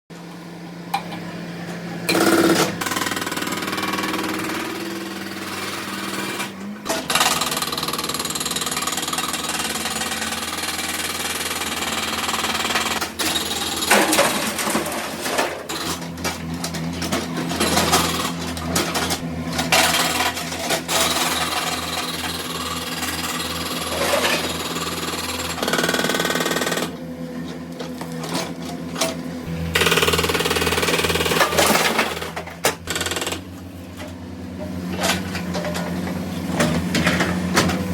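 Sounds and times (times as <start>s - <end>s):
heavy machine engine running: 1.3s - 37.9s
hydraulic breaker hammering: 29.6s - 33.5s.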